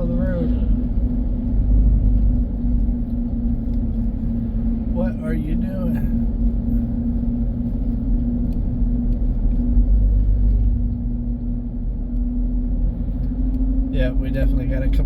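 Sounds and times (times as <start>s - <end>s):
car engine and road noise: 0.0s - 15.0s
constant hum: 0.0s - 15.0s.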